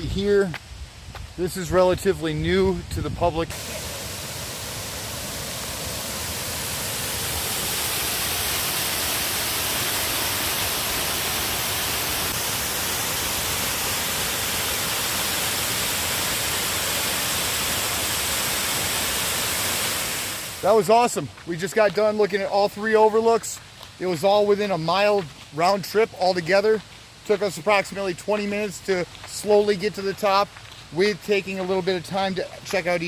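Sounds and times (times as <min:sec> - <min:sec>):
waterfall roar: 0:03.5 - 0:21.2.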